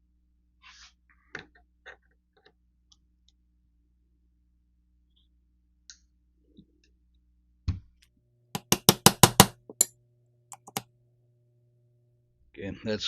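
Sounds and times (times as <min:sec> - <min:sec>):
sharp knocks on metal: 0:08.6 - 0:09.6.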